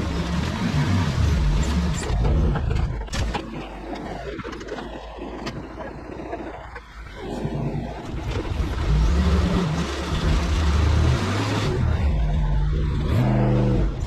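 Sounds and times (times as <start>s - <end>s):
vehicle engine running: 0.0s - 14.0s.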